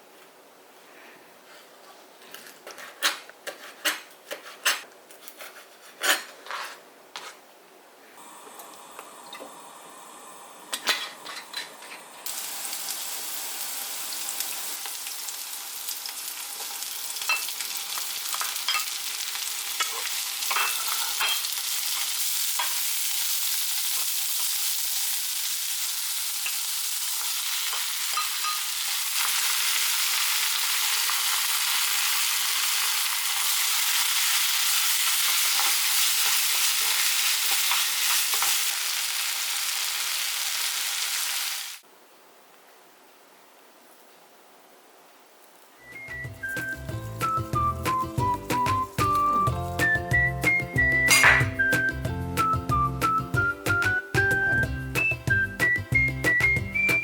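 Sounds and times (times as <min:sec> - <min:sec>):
food sizzling in a frying pan: 0:08.2 - 0:41.8, 0:45.8 - 0:51.7
kitchen utensils clattering: 0:10.8 - 0:12.0, 0:19.8 - 0:21.6, 0:27.7 - 0:29.0, 0:51.0 - 0:51.7.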